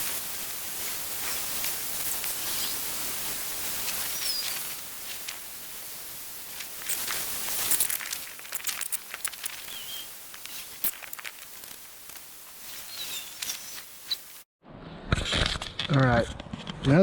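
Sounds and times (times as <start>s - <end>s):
rustling and crackling clicks: 1.2s - 5.6s, 6.5s - 14.4s
falling bird chirp: 4.1s - 4.7s, 9.4s - 10.8s, 12.6s - 14.3s.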